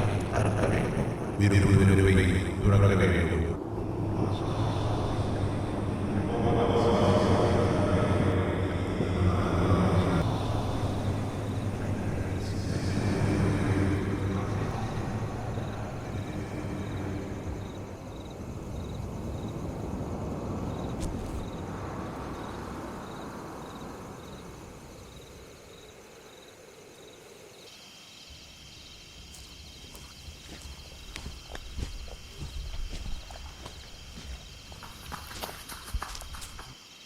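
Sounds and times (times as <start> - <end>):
low rumbling drone: 0.0 - 23.6.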